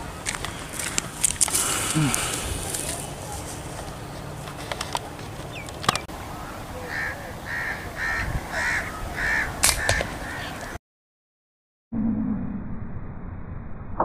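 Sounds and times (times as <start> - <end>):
bird calling: 0.0 - 10.8.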